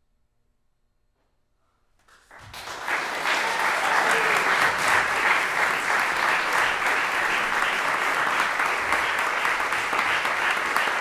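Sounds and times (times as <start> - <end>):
audience applauding: 2.2 - 11.0.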